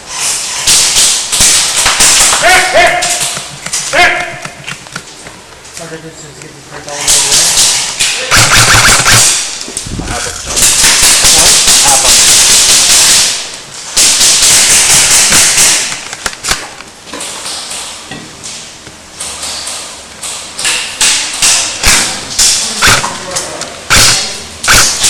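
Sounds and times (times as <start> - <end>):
airsoft gun firing bursts: 7.1 - 9.5, 10.6 - 13.4, 14.0 - 16.0, 23.9 - 25.0.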